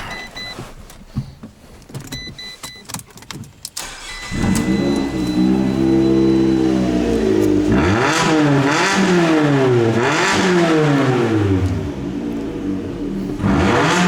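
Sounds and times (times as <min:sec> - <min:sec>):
car engine revving: 0:03.8 - 0:14.0.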